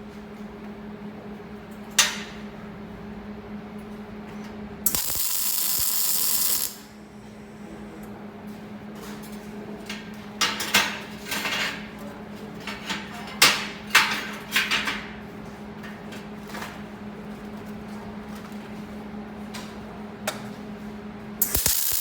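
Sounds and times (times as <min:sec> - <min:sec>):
steady hum: 0:04.9 - 0:08.0.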